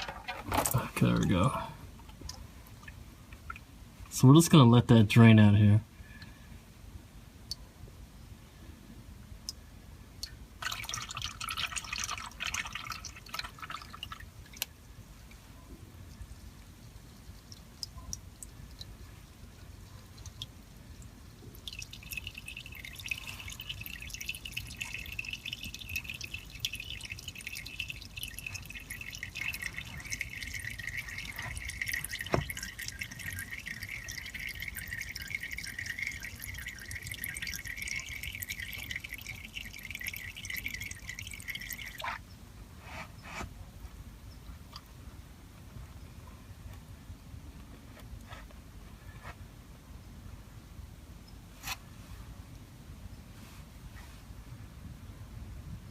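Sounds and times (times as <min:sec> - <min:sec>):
oil draining into pan: 0:10.6 - 0:14.7, 0:16.2 - 0:42.1.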